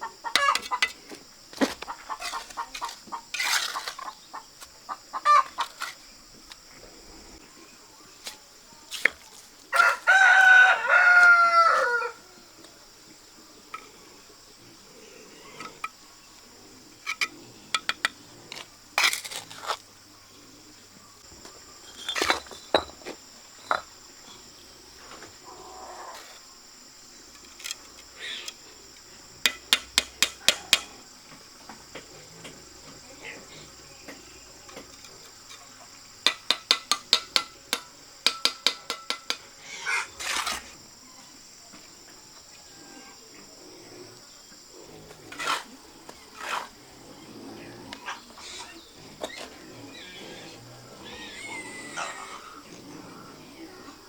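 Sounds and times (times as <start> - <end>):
insects droning: 0.0 - 54.0
trowel clinking on bricks: 0.3 - 1.0, 21.8 - 23.1, 36.3 - 39.4.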